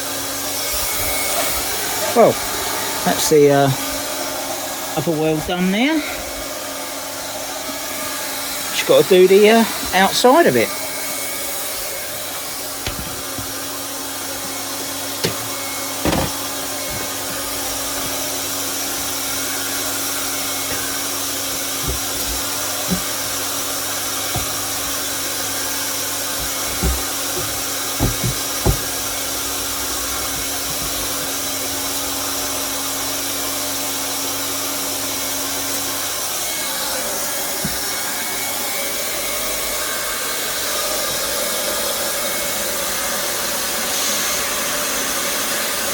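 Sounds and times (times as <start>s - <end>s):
hot-air welding gun hissing: 8.0s - 33.0s
handling knocks and clicks: 12.3s - 13.7s, 14.4s - 31.5s.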